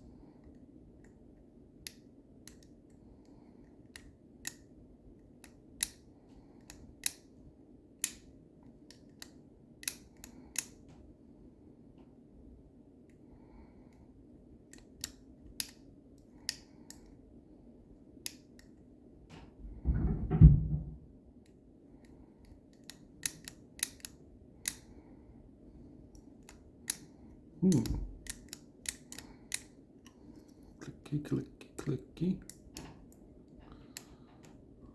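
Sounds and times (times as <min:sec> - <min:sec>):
lock picking metal clicks: 0:08.0 - 0:08.3, 0:08.9 - 0:10.8, 0:22.4 - 0:24.9, 0:26.1 - 0:30.6.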